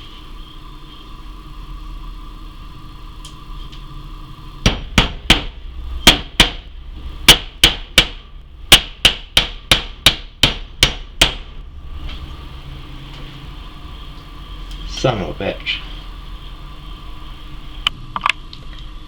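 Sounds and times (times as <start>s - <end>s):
hammer striking nail into wood: 4.7s - 6.7s, 7.3s - 11.5s.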